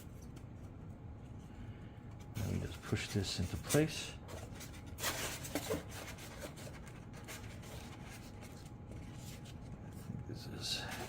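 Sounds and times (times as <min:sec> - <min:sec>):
plastic rubbing and scraping: 0:03.4 - 0:10.0.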